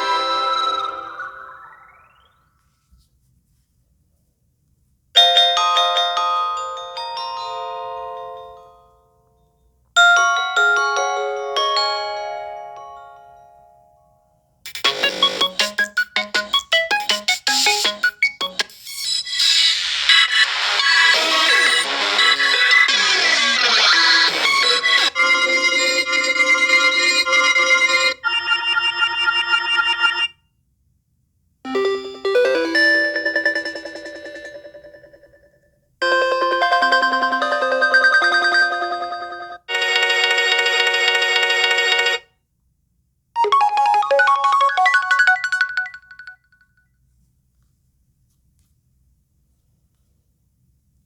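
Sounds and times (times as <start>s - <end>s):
electronic ringtone: 0.0s - 2.4s, 14.7s - 30.4s, 31.7s - 42.3s, 43.4s - 46.8s.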